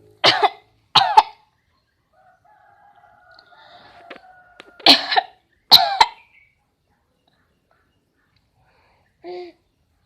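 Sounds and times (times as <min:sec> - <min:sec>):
person coughing: 0:04.8 - 0:06.2.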